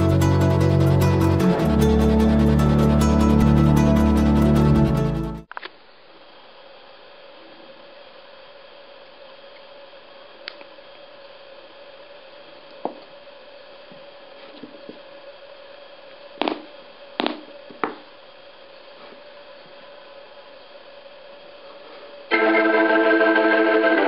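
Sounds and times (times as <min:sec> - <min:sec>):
faint steady hum: 0:05.4 - 0:24.0
sharp knocks: 0:16.4 - 0:18.0.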